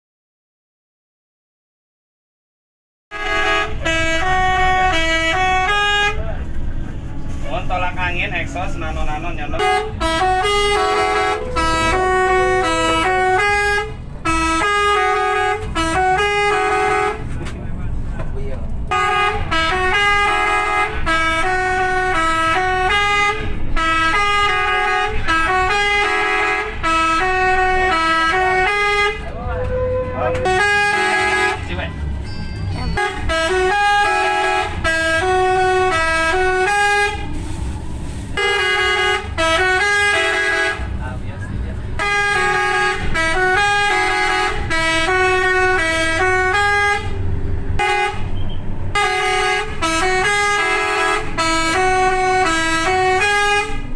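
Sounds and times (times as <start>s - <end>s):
multi-tone air horn tune: 3.1s - 6.2s, 8.8s - 17.2s, 18.9s - 31.8s, 32.6s - 40.9s, 42.0s - 47.2s, 47.8s - 53.9s
low rumble: 35.2s - 38.4s.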